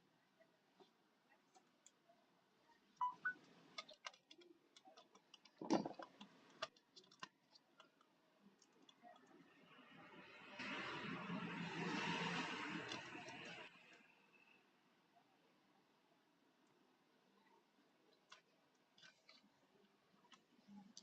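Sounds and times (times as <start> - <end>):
small clicks and taps: 3.0 - 9.4.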